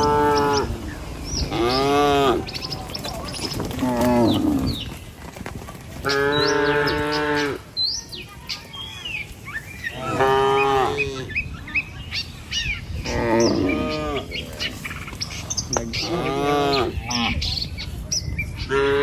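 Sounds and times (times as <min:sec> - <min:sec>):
cattle mooing: 0:00.0 - 0:02.6, 0:15.9 - 0:17.4
small birds chirping: 0:00.0 - 0:18.9.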